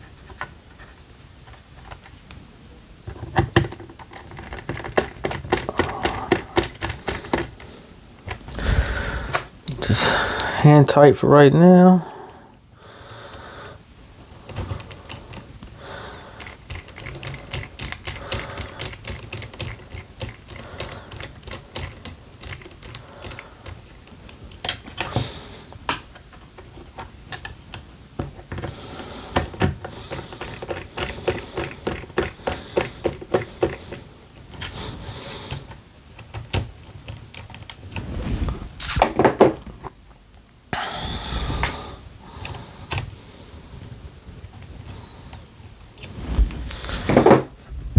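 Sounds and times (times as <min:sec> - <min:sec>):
small plastic parts clicking: 0:03.1 - 0:09.8, 0:14.4 - 0:28.7, 0:29.3 - 0:34.8.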